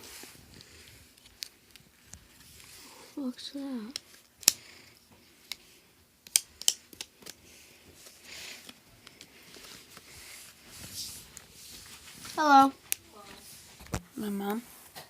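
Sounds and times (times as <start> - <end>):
plastic parts clicking: 3.9 - 4.6, 6.2 - 7.4
faint rustling: 7.4 - 15.0.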